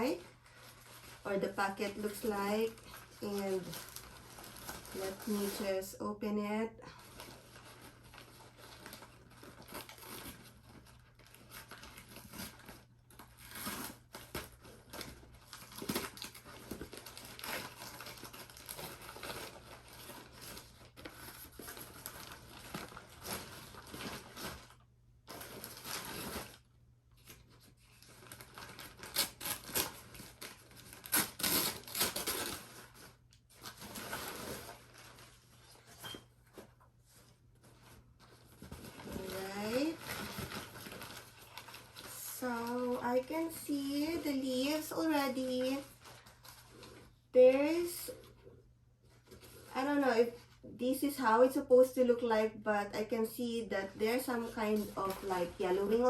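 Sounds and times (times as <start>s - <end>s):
packaging tearing and crinkling: 2.8s - 5.5s, 7.0s - 36.0s, 37.8s - 43.6s.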